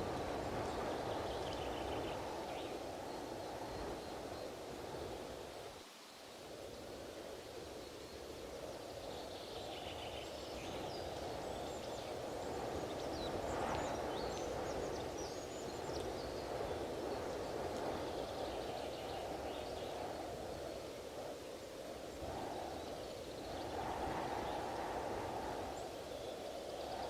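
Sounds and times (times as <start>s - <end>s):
small birds chirping: 0.2s - 5.6s
strong wind rushing: 15.8s - 27.0s.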